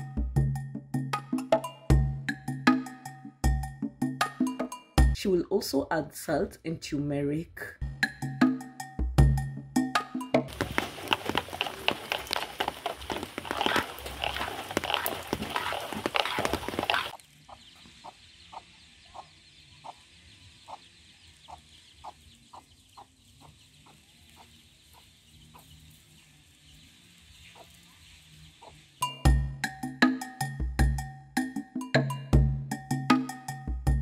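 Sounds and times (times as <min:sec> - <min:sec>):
hen clucking: 0:10.5 - 0:26.8, 0:27.4 - 0:28.9.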